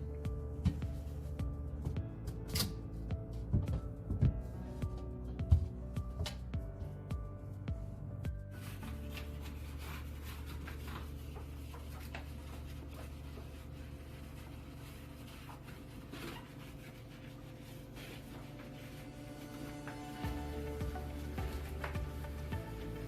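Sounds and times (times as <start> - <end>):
rubbing and scraping: 8.5 - 23.0.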